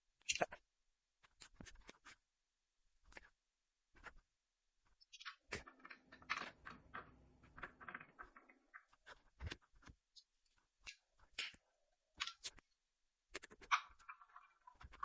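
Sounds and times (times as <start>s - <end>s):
clicks taps and rattles: 5.0s - 11.6s
scraping and rattling: 5.3s - 9.8s.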